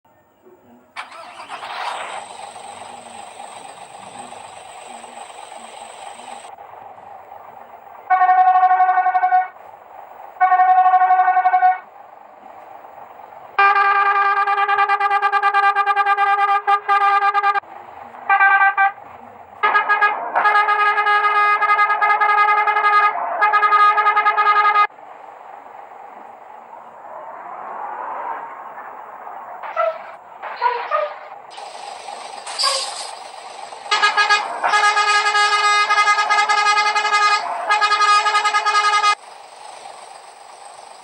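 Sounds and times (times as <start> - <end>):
bus air horn blasts: 8.1 - 9.6, 10.4 - 11.9, 13.6 - 17.6, 18.3 - 19.0, 19.6 - 24.9, 29.7 - 31.3, 33.9 - 39.2.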